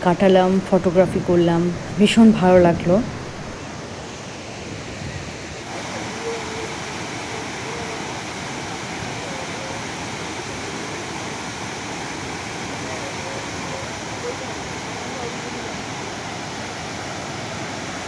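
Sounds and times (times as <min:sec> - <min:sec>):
waterfall rushing: 0:00.6 - 0:18.0
faint voices: 0:05.7 - 0:08.2, 0:09.0 - 0:11.4, 0:12.7 - 0:16.2.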